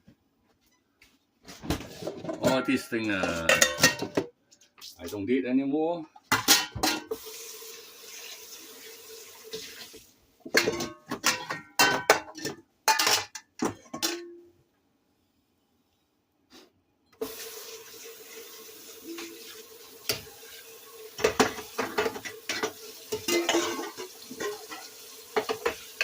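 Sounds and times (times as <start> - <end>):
dishes and utensils clattering: 1.6 - 4.3, 6.2 - 7.3, 10.4 - 14.5, 21.1 - 26.0
tap water running into sink: 7.0 - 10.1, 17.2 - 26.0.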